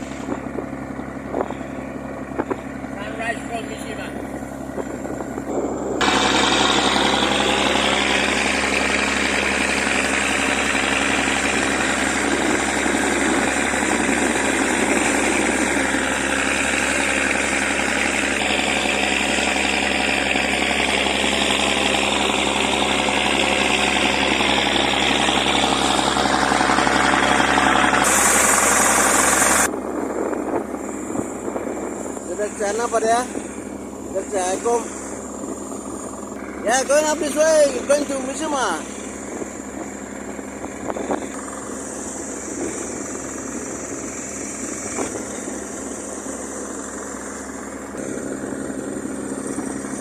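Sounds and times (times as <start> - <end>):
boat engine running: 0.0 - 50.0
high hiss: 27.9 - 29.7.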